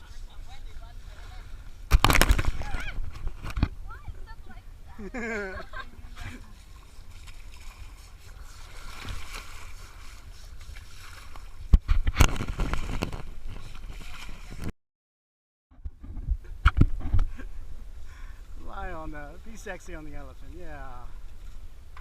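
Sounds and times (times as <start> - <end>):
water splashing and sloshing: 0.0 - 14.7.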